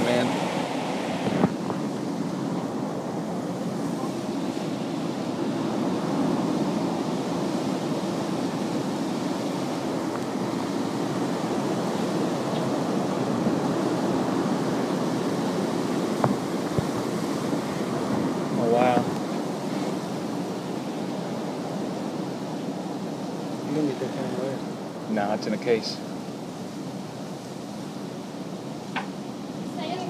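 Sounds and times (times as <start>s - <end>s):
strong storm wind rushing: 0.0s - 30.0s
sharp knocks: 28.9s - 29.1s.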